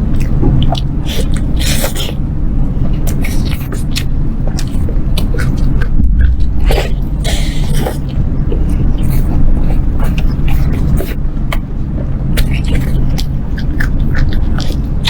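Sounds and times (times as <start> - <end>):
steady low rumble: 0.0 - 15.0
chewing food crunches: 12.3 - 15.0.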